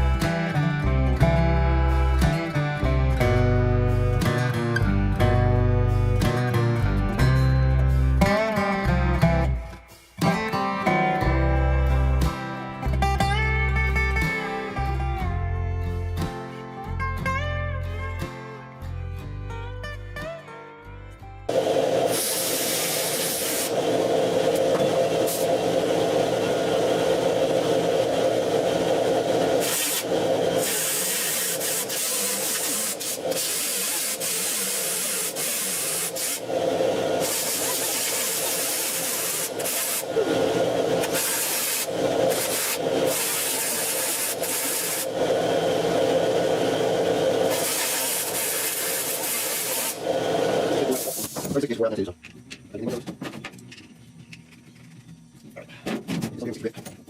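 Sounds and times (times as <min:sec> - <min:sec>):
angle grinder grinding metal: 0:29.3 - 0:51.2.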